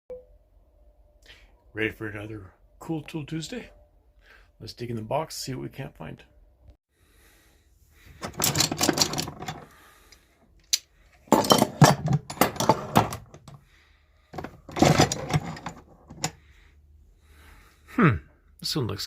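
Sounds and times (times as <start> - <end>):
metal hand tools clattering: 8.2 - 9.6, 11.3 - 13.6, 14.4 - 16.4.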